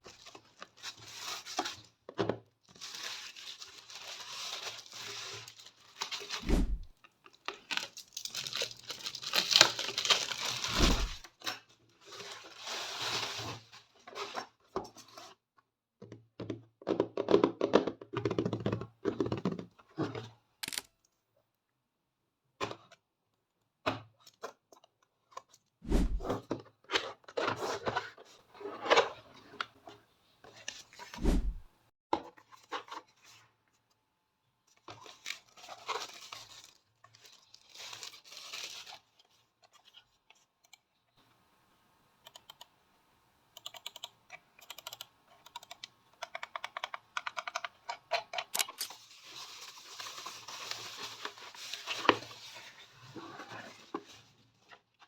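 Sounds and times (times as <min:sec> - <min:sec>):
plastic and paper tearing: 0:07.5 - 0:11.3, 0:48.5 - 0:54.1.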